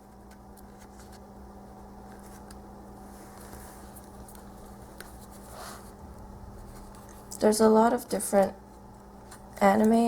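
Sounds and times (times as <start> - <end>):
pages being leafed through: 0.0 - 1.3, 2.0 - 5.8
low electrical hum: 0.0 - 10.0.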